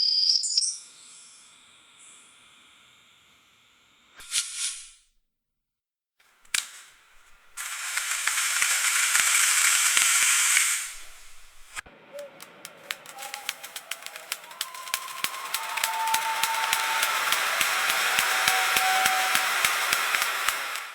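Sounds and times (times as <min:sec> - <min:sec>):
faint steady whine: 0:00.8 - 0:04.1
steady hiss: 0:06.3 - 0:20.9
sharp clicks and ticks: 0:06.5 - 0:20.9
dental chair click: 0:12.6 - 0:20.9.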